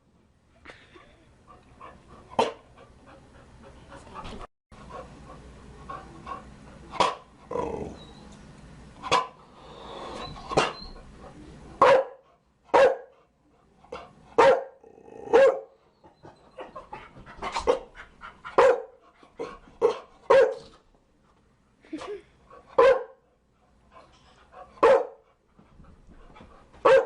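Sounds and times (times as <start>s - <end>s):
dog barking: 9.1s - 9.4s, 11.8s - 13.1s, 14.4s - 15.8s, 18.6s - 19.0s, 19.8s - 20.7s, 22.8s - 23.2s, 24.8s - 25.2s.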